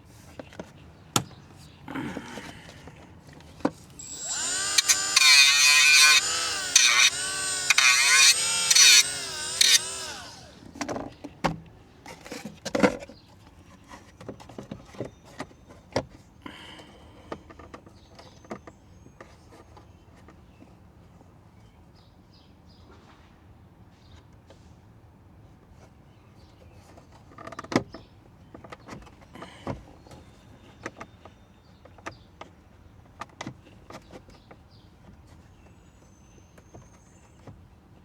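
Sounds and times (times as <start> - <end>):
die grinder cutting plastic: 4.0 - 10.8.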